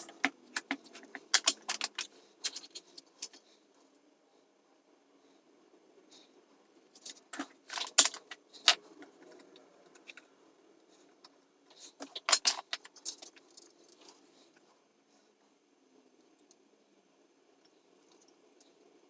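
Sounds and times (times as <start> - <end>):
metal hand tools clinking: 0.0 - 3.4, 7.0 - 8.8, 12.0 - 13.4
faint steady hum: 0.0 - 19.0.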